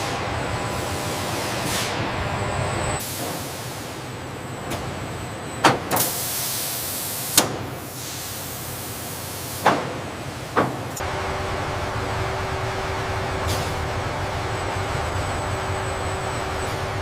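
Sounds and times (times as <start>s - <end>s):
machinery hissing: 10.9s - 17.0s.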